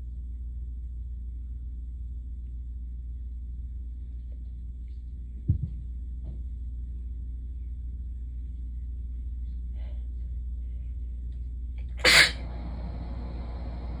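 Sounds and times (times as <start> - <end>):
steady low hum: 0.0 - 14.0
person sneezing: 12.0 - 12.4.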